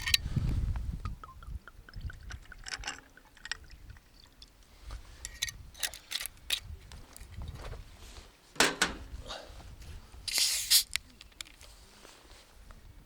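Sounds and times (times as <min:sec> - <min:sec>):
glass and ice clinking: 0:01.1 - 0:03.8
liquid pouring into a glass: 0:01.1 - 0:04.4.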